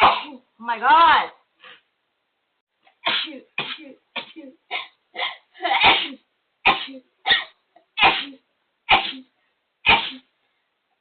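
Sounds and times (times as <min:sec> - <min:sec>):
person sneezing: 0:00.0 - 0:00.4, 0:03.1 - 0:10.3.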